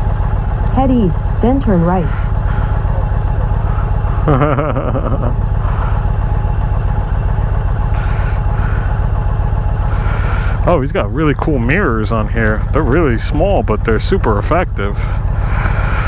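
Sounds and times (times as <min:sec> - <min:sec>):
motorcycle engine idling: 0:00.0 - 0:16.0.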